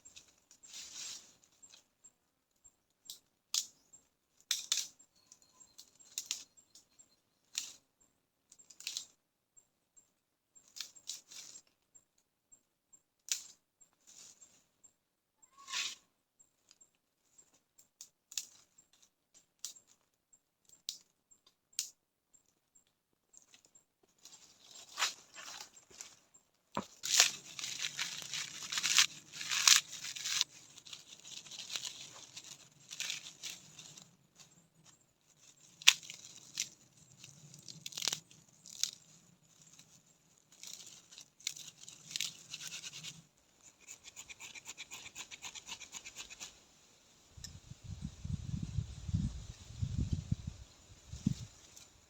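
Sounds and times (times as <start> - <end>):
light scraping ticks: 4.5 - 7.8
crunching and tearing: 26.8 - 34.1, 35.4 - 43.2.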